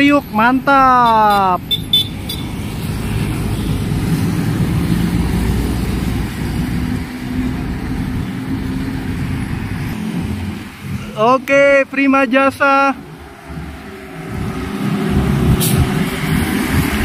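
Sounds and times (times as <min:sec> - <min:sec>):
diesel bus engine drone: 0:01.9 - 0:11.2, 0:12.9 - 0:17.0.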